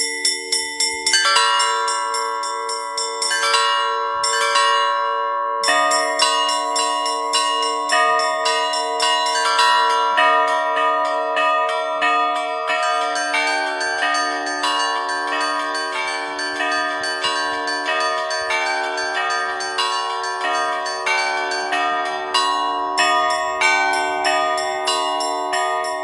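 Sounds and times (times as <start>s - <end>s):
church bells pealing: 0.0s - 26.0s.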